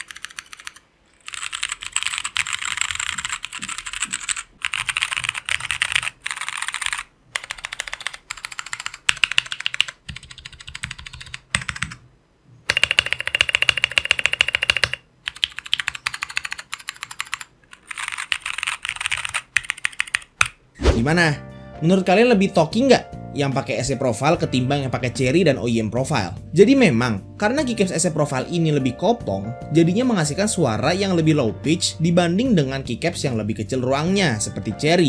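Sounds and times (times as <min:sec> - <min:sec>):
fast mechanical keyboard typing: 0:00.0 - 0:12.0, 0:12.7 - 0:20.6.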